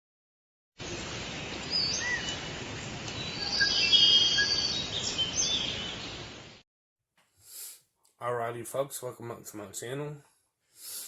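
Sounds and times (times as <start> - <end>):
birds chirping: 0.8 - 6.6.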